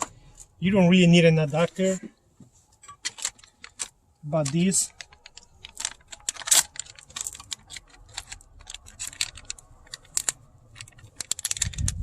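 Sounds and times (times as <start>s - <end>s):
small hard parts clicking and rattling: 2.7s - 12.0s.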